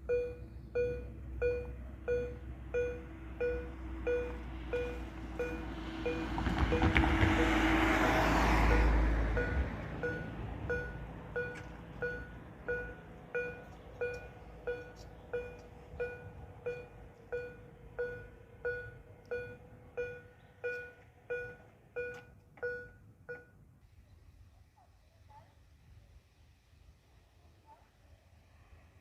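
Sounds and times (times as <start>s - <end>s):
level crossing warning bell: 0.0s - 7.8s, 8.5s - 23.7s.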